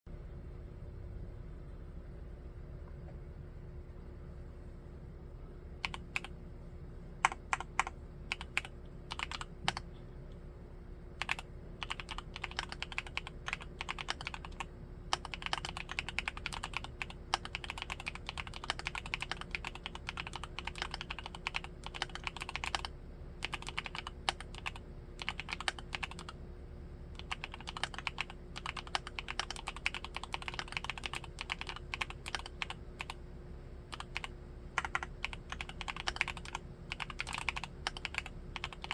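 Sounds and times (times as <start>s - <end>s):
mechanical keyboard typing: 5.8s - 6.3s, 7.2s - 9.9s, 11.2s - 26.4s, 27.2s - 33.2s, 33.9s - 38.9s.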